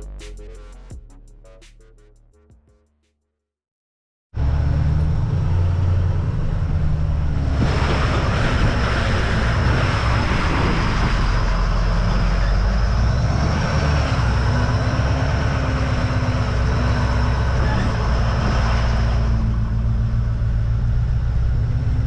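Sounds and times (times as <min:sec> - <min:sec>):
truck engine rumble: 0:00.0 - 0:02.4, 0:04.4 - 0:22.0
road noise: 0:04.4 - 0:22.0.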